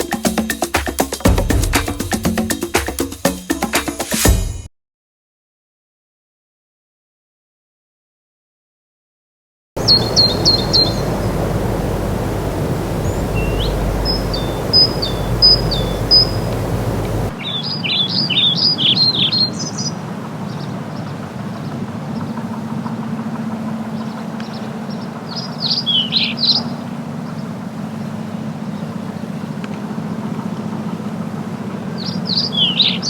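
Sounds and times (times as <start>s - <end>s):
low rumble: 9.8s - 17.4s
birds chirping: 9.8s - 29.4s.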